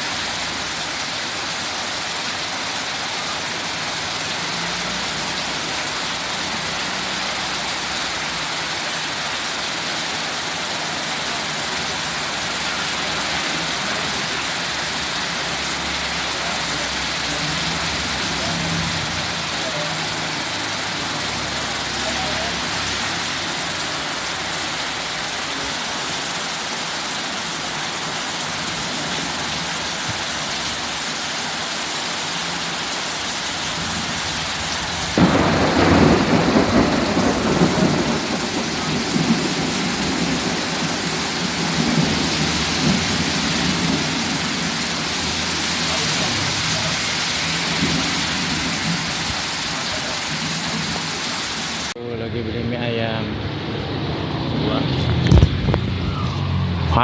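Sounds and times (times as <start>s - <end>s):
heavy rain falling: 0.0s - 57.0s
thunder clap rumbling: 34.7s - 51.0s.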